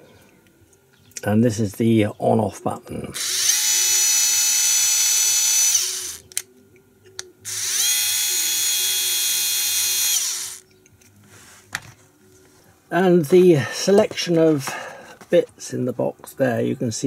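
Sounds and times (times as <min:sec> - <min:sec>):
cordless screwdriver motor whine: 0:03.2 - 0:06.4, 0:07.5 - 0:10.6.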